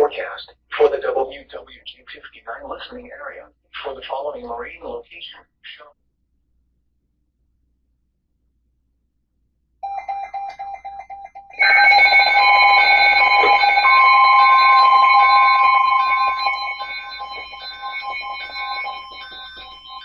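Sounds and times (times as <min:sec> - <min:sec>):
alarm tones and alternating beeps: 0:09.8 - 0:20.0
soft pulsing beep: 0:09.8 - 0:20.0.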